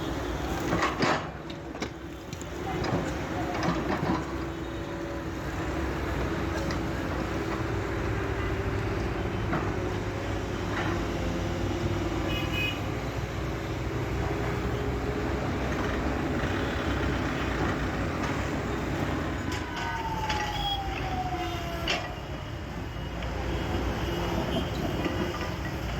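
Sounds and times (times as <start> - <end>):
excavator diesel engine running: 0.0 - 12.2, 13.0 - 21.3.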